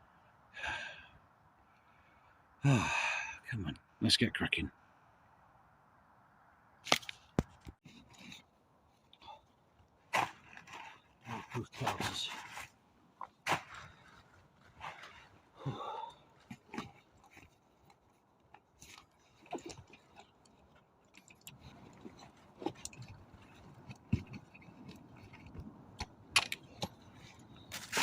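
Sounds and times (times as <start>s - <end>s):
camping gear clicks and knocks: 6.8s - 9.2s, 9.8s - 28.0s.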